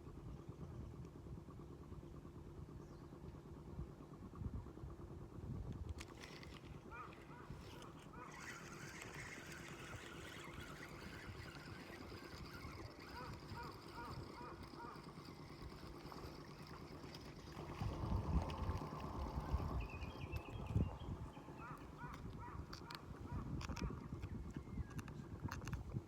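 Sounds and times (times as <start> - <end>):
small birds chirping: 6.9 - 25.4
low rumble: 17.2 - 22.7.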